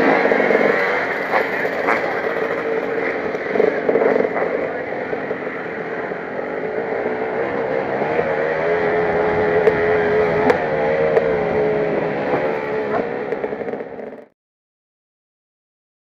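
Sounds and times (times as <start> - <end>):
sharp ticks: 0.0 - 5.5
motocross bike engine running: 0.0 - 14.3.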